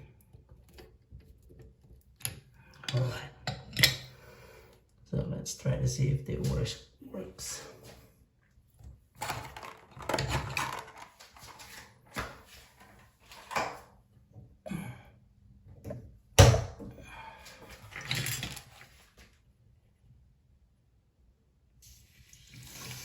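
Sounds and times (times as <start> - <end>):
clunks and rattles at faucet: 0.3 - 4.1.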